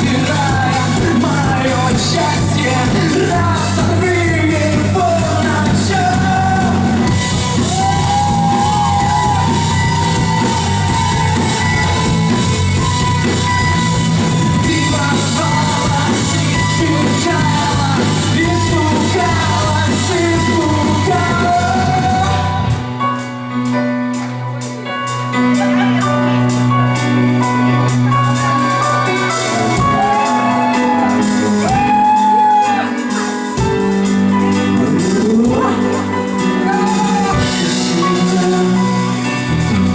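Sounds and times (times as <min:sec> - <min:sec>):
person singing: 0:00.0 - 0:23.3, 0:25.5 - 0:39.9
live rock band: 0:00.0 - 0:39.9.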